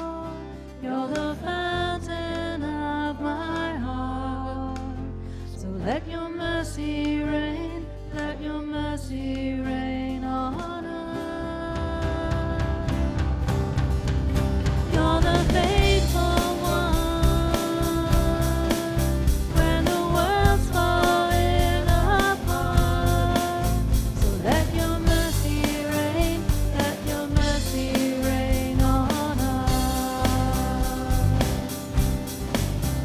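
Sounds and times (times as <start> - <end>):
drum kit and guitars: 11.8 - 33.0.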